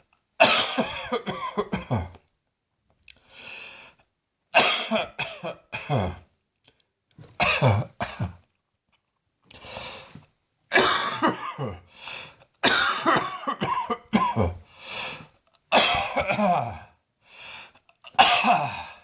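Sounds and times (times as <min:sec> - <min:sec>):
person coughing hard: 0:00.4 - 0:02.2, 0:04.6 - 0:06.3, 0:07.4 - 0:08.4, 0:10.7 - 0:11.9, 0:12.6 - 0:14.7, 0:15.7 - 0:17.0, 0:18.1 - 0:19.0
quiet breaths: 0:03.0 - 0:04.2, 0:09.4 - 0:10.4, 0:11.8 - 0:12.6, 0:14.6 - 0:15.6, 0:17.1 - 0:18.0.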